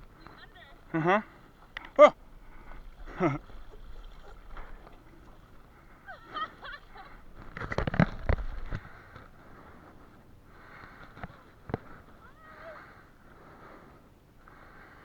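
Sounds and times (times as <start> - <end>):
water splashing around kayak: 0.8 - 15.0.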